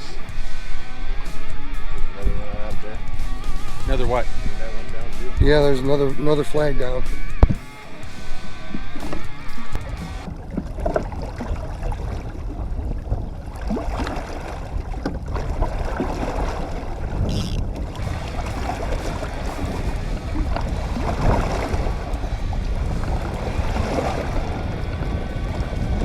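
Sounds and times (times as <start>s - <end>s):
boat motor rumbling: 0.0s - 26.0s
water against hull: 0.0s - 26.0s
wind buffeting microphone: 0.0s - 26.0s.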